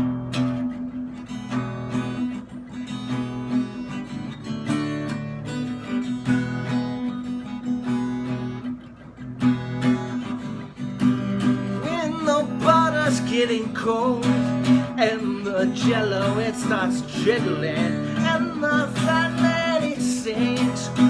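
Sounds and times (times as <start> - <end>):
acoustic guitar strumming: 0.0 - 21.0.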